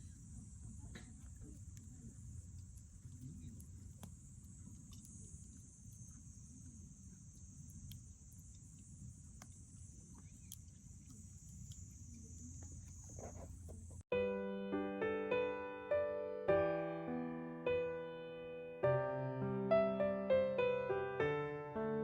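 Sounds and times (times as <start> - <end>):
bonfire crackling: 0.0 - 14.0
crickets chirping: 0.0 - 14.0.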